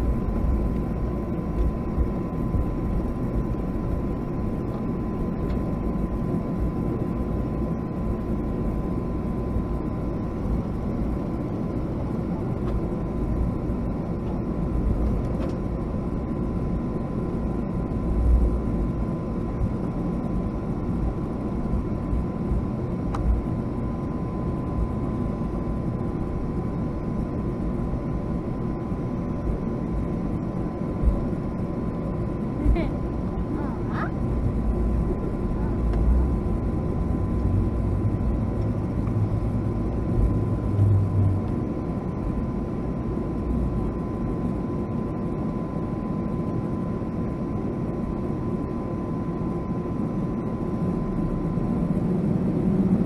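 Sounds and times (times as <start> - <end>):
airplane cabin engine noise: 0.0 - 53.0.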